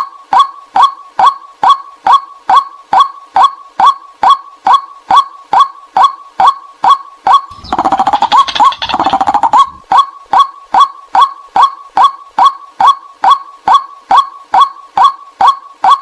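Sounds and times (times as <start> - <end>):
bird chattering: 7.5 - 9.9.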